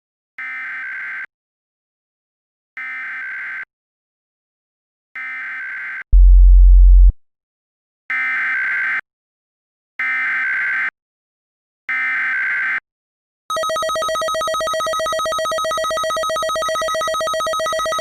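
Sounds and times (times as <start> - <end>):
loud low buzz: 6.2 - 7.2.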